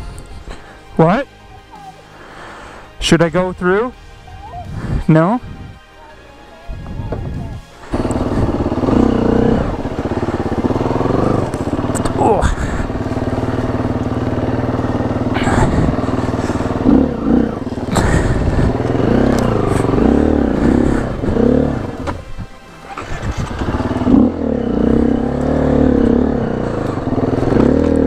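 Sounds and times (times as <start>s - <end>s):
dirt bike engine revving: 7.8s - 28.0s.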